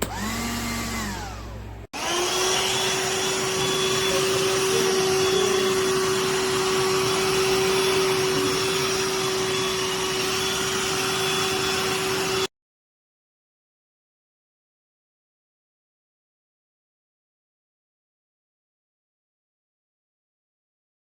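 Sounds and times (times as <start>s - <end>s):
handheld vacuum running: 0.0s - 12.5s.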